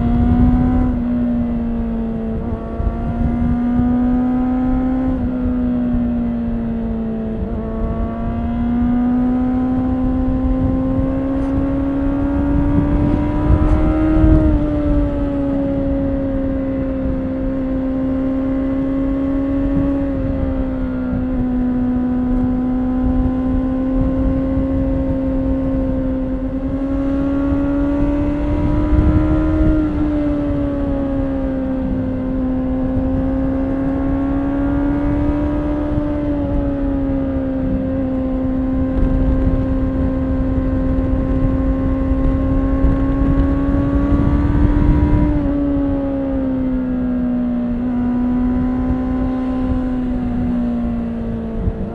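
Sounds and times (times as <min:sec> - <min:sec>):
motorcycle engine running: 0:00.0 - 0:51.9.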